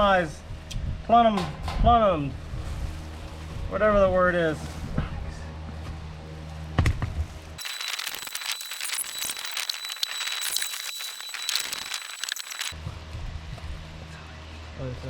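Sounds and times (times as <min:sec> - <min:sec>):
faint high whine: 0:07.6 - 0:12.8.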